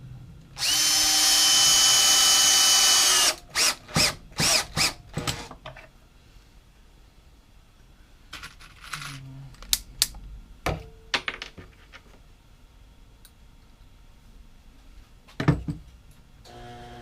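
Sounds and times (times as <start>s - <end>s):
tools and wood knocking on workbench: 15.3s - 15.9s.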